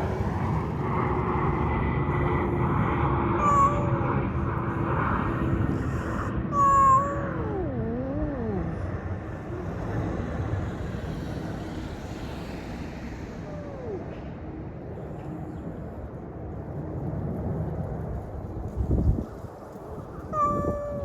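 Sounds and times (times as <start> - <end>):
low outdoor rumble: 0.0 - 21.0
cat meowing faintly: 3.4 - 4.4, 5.4 - 10.1, 13.4 - 14.2, 20.3 - 21.0.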